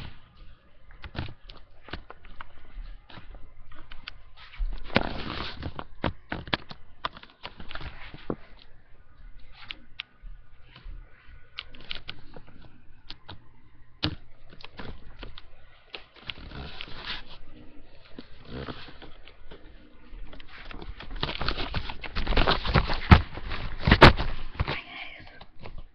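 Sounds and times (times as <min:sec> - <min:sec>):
rustling: 0:14.6 - 0:25.8
cat moving and being handled: 0:14.6 - 0:25.9.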